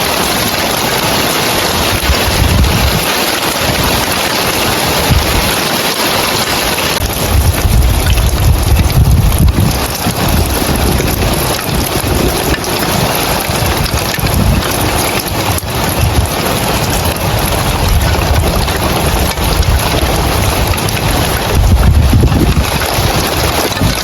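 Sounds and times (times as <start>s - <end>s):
heavy rain on roof tiles: 0.0s - 24.0s
low rumble: 7.0s - 13.1s.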